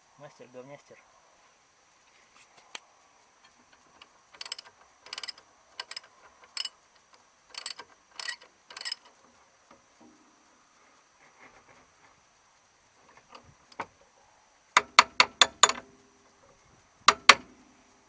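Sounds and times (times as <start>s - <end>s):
ratchet wrench clicking: 4.0s - 9.2s, 14.8s - 15.8s, 17.1s - 17.5s.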